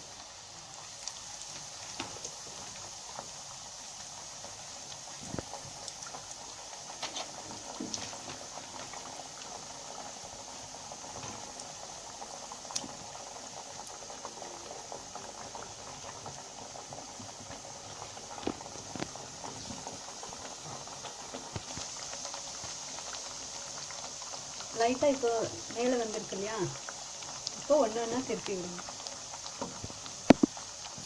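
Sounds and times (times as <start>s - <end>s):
food deep-frying in hot oil: 0.0s - 31.0s
oil popping: 15.1s - 31.0s.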